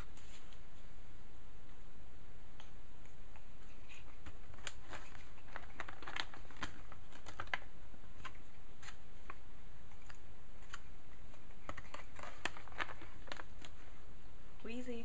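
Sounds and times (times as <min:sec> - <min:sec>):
cats crunching dry treats: 0:03.3 - 0:14.0.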